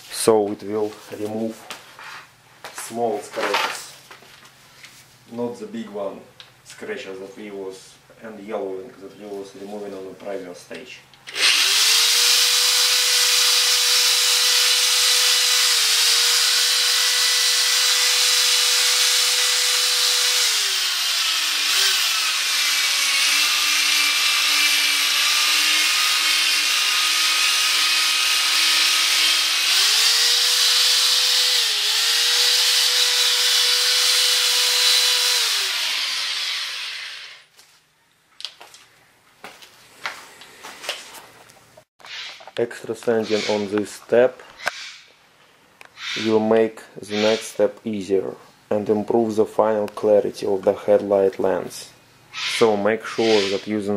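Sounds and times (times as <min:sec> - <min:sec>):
electric drill sanding plastic: 0:11.3 - 0:37.5.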